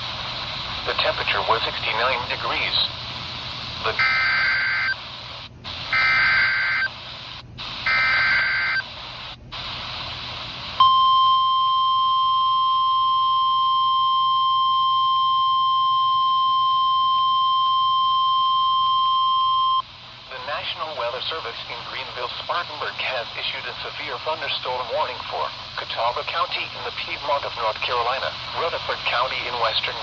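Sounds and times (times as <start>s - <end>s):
radio signal hiss: 0.0s - 10.9s, 15.0s - 30.0s
screechy digital data bursts: 4.0s - 5.0s, 6.0s - 7.0s, 7.9s - 8.8s
steady warning alarm tone: 4.0s - 5.0s, 5.9s - 7.0s, 7.8s - 8.9s, 10.8s - 19.8s.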